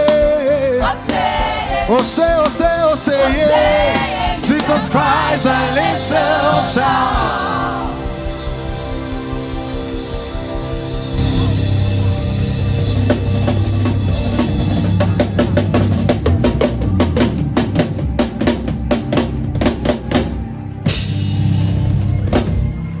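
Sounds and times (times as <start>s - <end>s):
backing track with bass line: 0.0s - 23.0s
drum kit playing: 0.0s - 23.0s.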